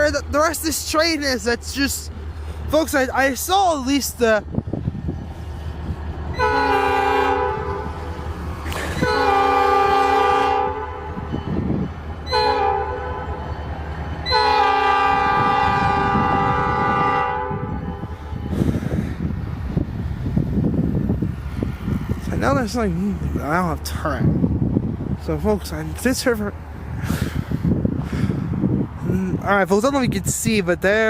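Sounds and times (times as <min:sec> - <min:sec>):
locomotive air horn blasts: 0:06.3 - 0:08.0, 0:08.7 - 0:11.3, 0:12.2 - 0:13.4, 0:14.2 - 0:18.5.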